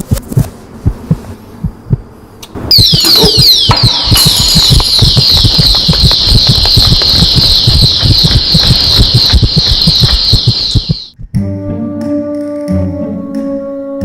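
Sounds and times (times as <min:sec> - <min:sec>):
alarm siren wailing: 0:02.7 - 0:11.2.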